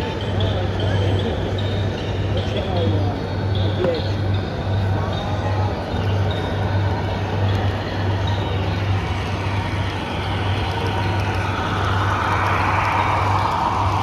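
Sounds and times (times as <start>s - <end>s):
vehicle engine humming: 7.1s - 14.0s
rushing noise: 7.9s - 14.0s.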